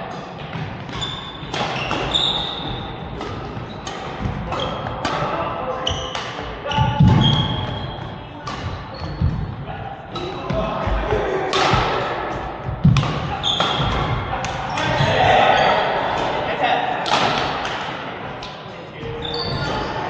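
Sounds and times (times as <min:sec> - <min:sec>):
sneakers squeaking on floor: 0:00.2 - 0:16.4, 0:19.0 - 0:20.0
racket hitting shuttlecock: 0:00.4 - 0:05.4, 0:11.5 - 0:15.0, 0:17.0 - 0:18.0.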